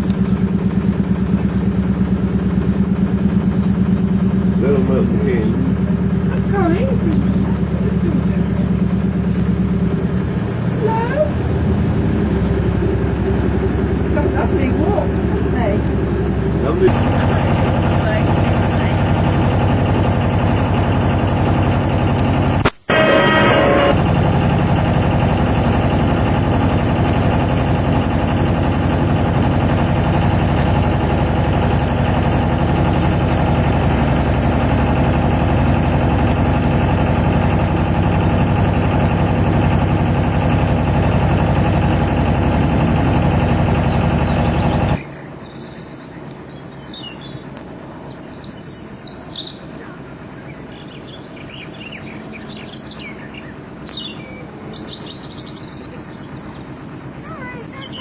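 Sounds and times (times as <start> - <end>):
small birds chirping: 0.0 - 22.6, 43.0 - 58.0
pulsing mechanical drone: 0.0 - 58.0.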